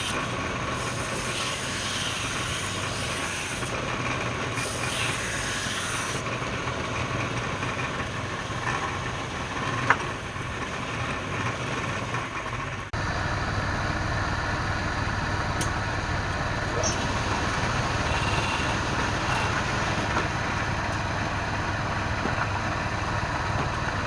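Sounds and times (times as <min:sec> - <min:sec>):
wood lathe motor humming: 0:00.0 - 0:10.0, 0:15.6 - 0:21.4.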